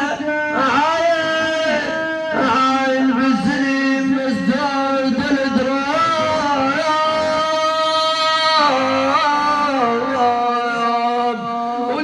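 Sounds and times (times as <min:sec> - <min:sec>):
man singing a lament: 0:00.0 - 0:12.0.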